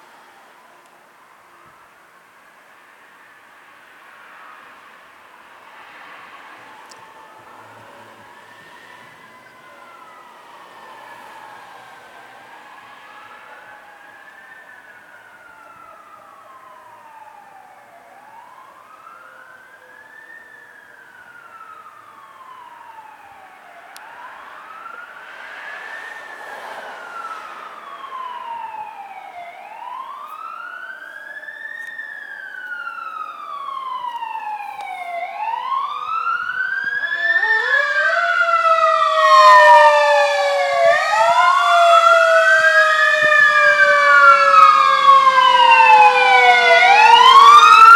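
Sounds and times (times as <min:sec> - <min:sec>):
fire truck siren wailing: 0:05.8 - 0:47.9
second siren tone: 0:23.8 - 0:42.8.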